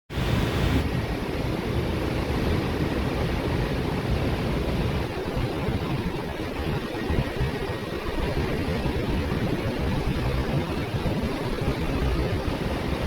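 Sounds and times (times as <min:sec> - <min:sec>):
wind buffeting microphone: 0:00.2 - 0:13.0.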